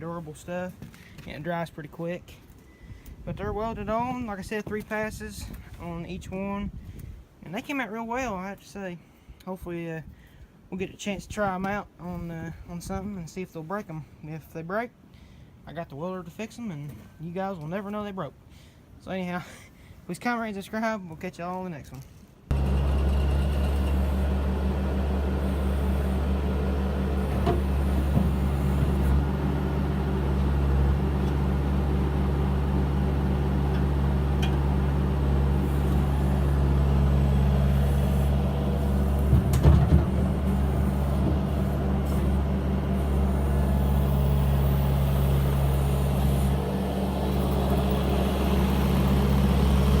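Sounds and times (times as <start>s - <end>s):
engine idling: 22.5s - 50.0s.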